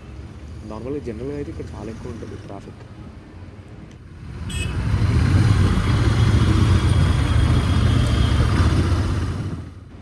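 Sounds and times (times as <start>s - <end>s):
motorcycle engine rumbling: 4.1s - 10.0s.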